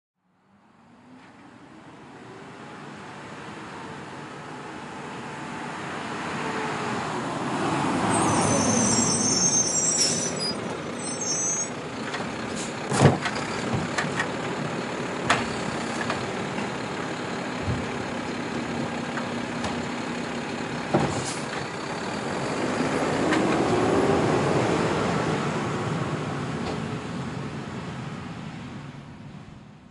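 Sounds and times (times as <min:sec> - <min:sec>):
garbage truck engine: 0:01.0 - 0:29.6
air brake hiss and squeal: 0:08.1 - 0:11.8.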